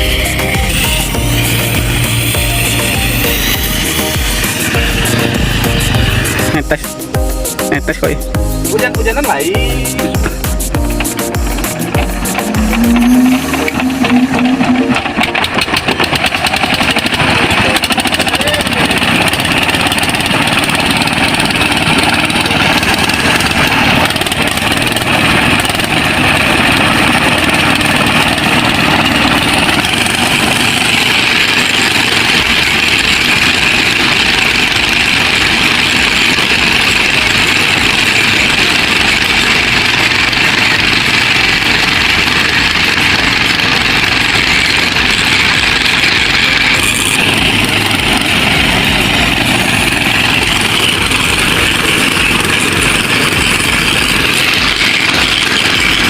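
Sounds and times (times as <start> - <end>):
engine idling: 0.0 - 56.0.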